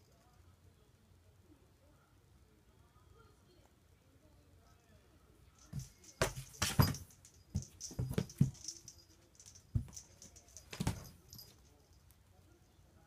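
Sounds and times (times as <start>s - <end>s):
kitten playing with toy: 5.6s - 12.1s.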